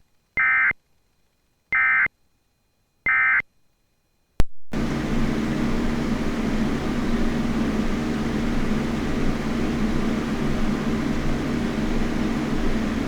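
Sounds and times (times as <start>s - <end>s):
low hum: 4.8s - 13.0s.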